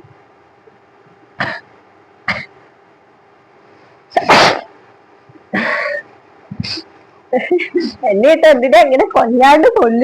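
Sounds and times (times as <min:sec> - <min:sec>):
person sneezing: 0:04.1 - 0:04.8.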